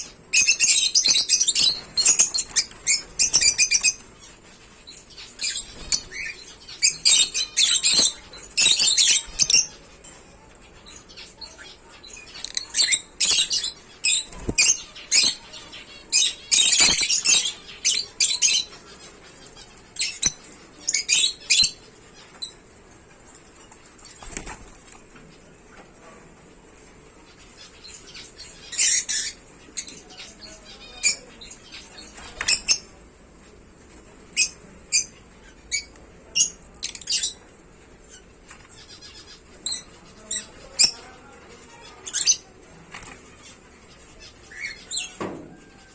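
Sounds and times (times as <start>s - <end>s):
lovebirds chattering calls: 0.0s - 22.8s, 27.3s - 33.0s, 34.3s - 45.9s
wings fluttering: 0.3s - 4.5s, 5.3s - 9.7s, 12.4s - 15.5s, 23.4s - 25.1s.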